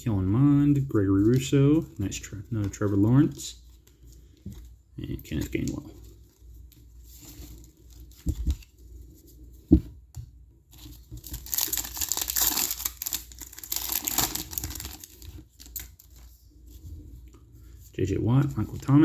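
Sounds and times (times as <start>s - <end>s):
foil wrapper tearing and crinkling: 11.2s - 16.2s.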